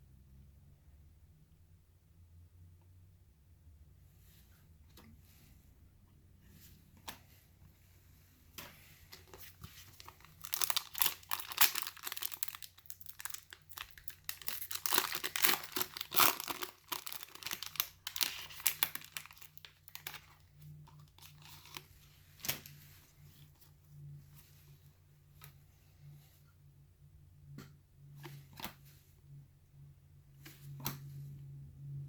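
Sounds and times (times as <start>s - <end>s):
wrapper tearing and crinkling: 9.3s - 21.8s.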